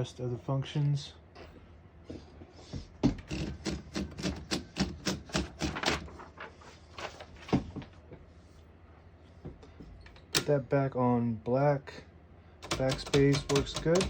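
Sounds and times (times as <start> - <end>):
sharp typewriter knock: 3.0 - 6.1, 12.6 - 14.0
typewriter key strikes: 3.3 - 6.1, 12.6 - 14.0.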